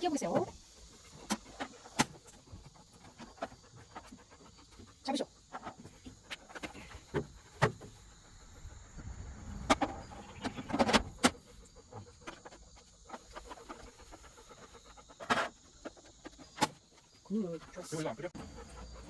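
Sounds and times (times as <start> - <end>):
low rumble: 8.4 - 10.7.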